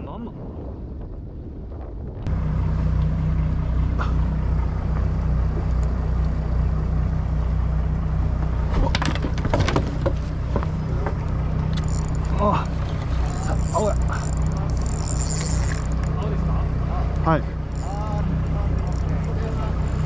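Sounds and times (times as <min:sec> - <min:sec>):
boat engine running: 0:02.2 - 0:20.0
sharp knocks and clatter: 0:08.7 - 0:12.2.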